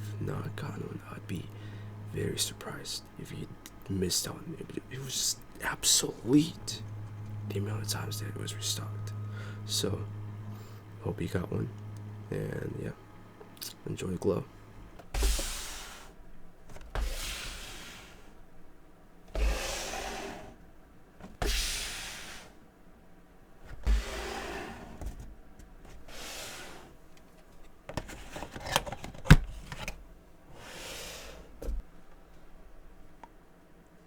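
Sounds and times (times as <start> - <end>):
packaging sliding over a surface: 15.2 - 16.2, 17.0 - 18.4, 19.4 - 20.6.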